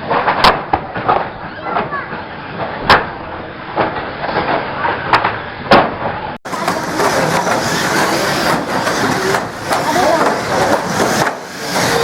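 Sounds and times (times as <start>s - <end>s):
sharp loud bangs: 3.8s - 12.0s
race car engines running: 6.5s - 12.0s.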